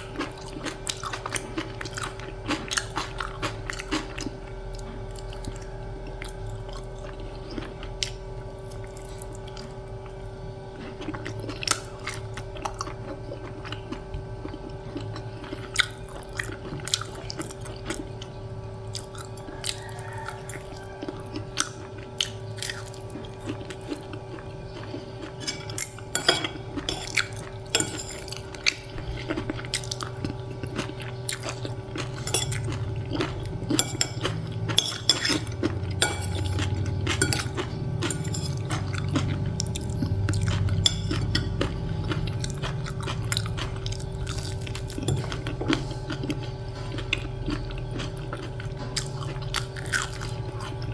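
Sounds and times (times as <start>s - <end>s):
person chewing: 0.0s - 50.9s
cutlery clinking on a plate: 25.4s - 28.7s, 32.0s - 39.3s.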